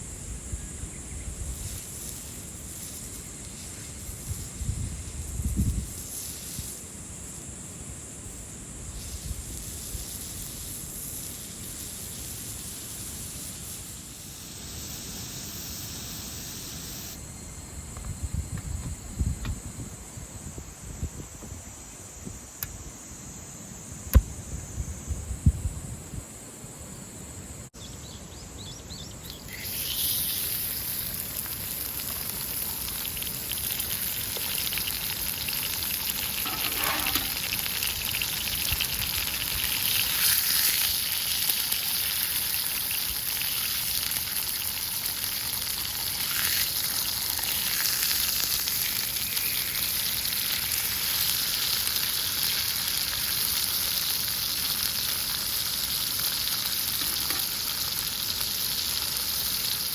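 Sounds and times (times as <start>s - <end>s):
food sizzling in a hot pan: 1.4s - 7.4s, 8.3s - 17.2s, 29.2s - 59.9s.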